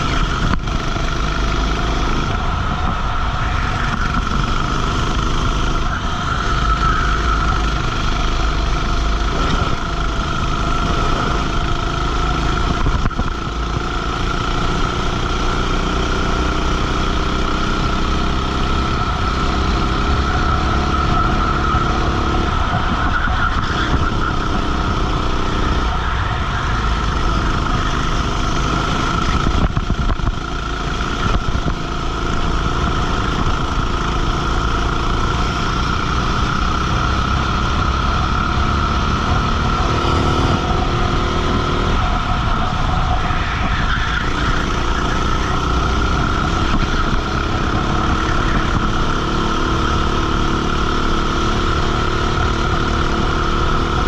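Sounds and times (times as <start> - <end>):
kart engine revving: 0.0 - 54.0
wind rushing on microphone: 2.2 - 6.3, 8.8 - 13.7, 25.6 - 34.2, 37.1 - 49.3.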